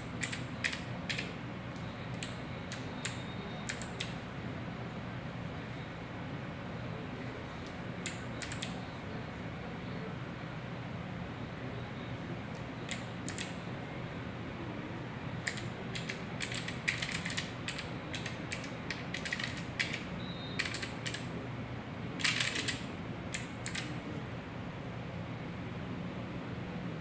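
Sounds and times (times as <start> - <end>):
mechanical keyboard clicking: 0.1 - 1.3, 2.1 - 4.2, 8.0 - 8.8, 12.9 - 13.6, 15.4 - 21.3, 22.2 - 23.9.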